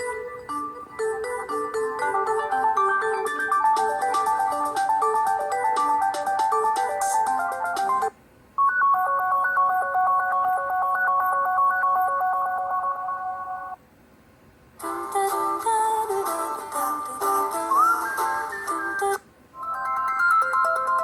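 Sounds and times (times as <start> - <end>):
phone ringtones: 0.0 - 13.8.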